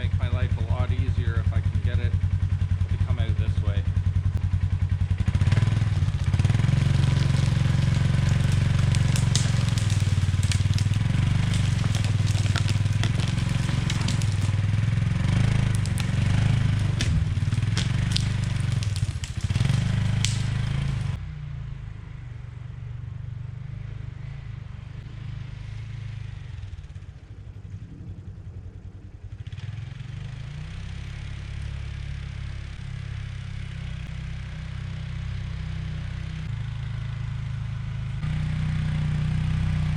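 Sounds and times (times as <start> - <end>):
atv engine running: 0.0 - 39.9
brush and wood snapping: 5.9 - 21.2.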